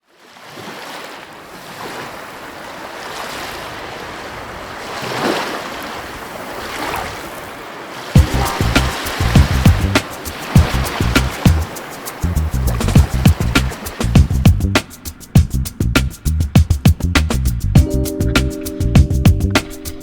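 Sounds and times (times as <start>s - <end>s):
sea surf washing: 0.4s - 16.4s, 17.6s - 20.0s
music with strong beat: 8.2s - 20.0s
wind on microphone: 8.2s - 20.0s.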